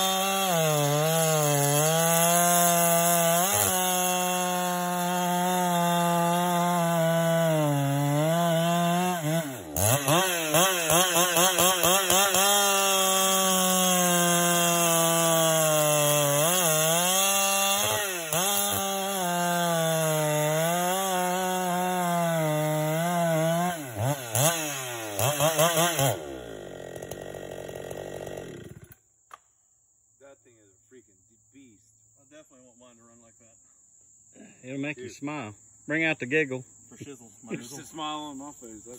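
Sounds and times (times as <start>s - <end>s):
chainsaw running at high revs: 0.0s - 29.0s.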